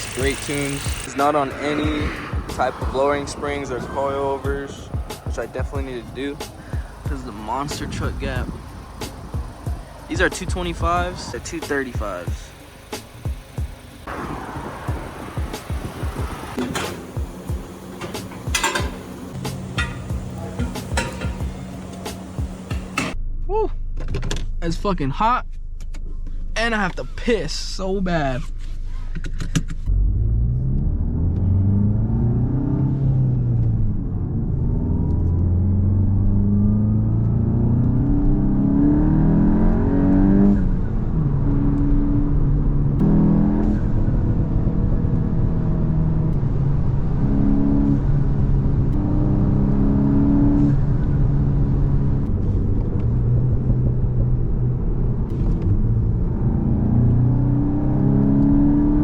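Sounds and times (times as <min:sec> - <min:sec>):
turbocharged car engine accelerating: 0:00.0 - 0:23.2, 0:29.8 - 0:59.0.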